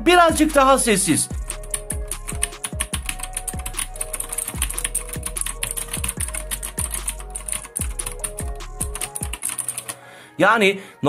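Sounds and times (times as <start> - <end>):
clicky mechanical keyboard typing: 1.7 - 10.0.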